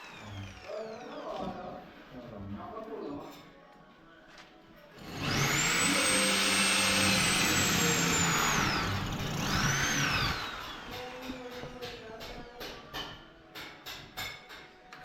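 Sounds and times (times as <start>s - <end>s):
electric drill boring into wall: 0.0s - 1.6s, 5.0s - 11.4s.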